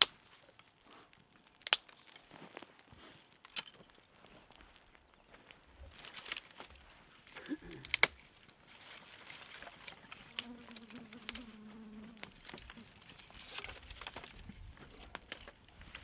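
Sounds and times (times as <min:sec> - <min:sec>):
insect buzzing: 0:10.0 - 0:12.8.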